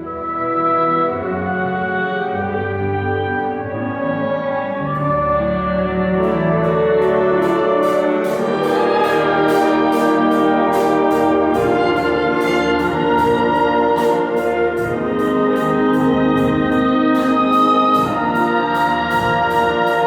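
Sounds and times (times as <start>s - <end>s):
orchestra with brass: 0.0s - 20.0s
steady percussive beat: 6.2s - 20.0s.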